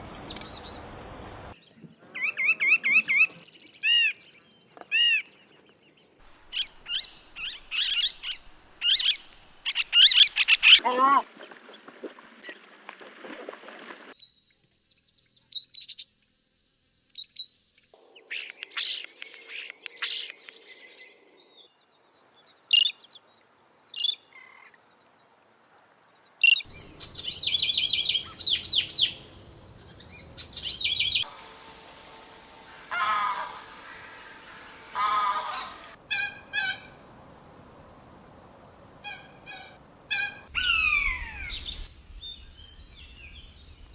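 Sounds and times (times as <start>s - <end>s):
wild birds chirping and trilling: 1.5s - 10.9s, 17.2s - 31.3s, 32.9s - 37.1s, 39.0s - 43.9s.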